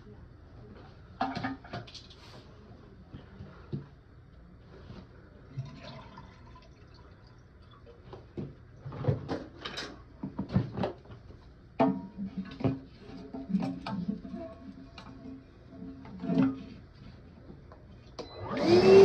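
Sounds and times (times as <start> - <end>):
toilet tank knocks and clatter: 11.8 - 14.3.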